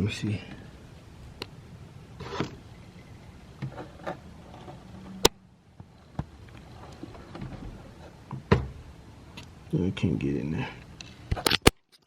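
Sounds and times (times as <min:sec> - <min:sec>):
clicks and knocks inside car door: 0:07.0 - 0:08.8.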